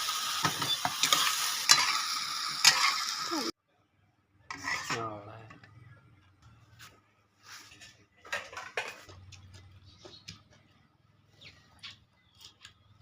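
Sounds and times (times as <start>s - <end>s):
food sizzling in a pan: 0.0s - 3.5s
utensil scraping a pan: 4.5s - 5.2s.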